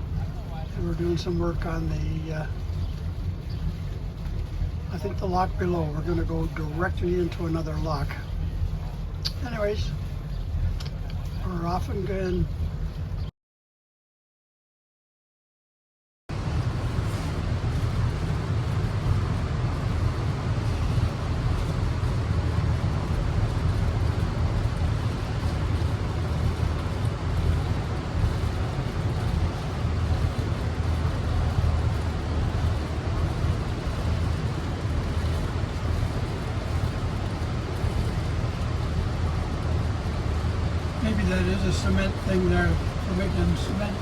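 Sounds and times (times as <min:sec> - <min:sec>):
motor boat engine droning: 0:16.3 - 0:44.0.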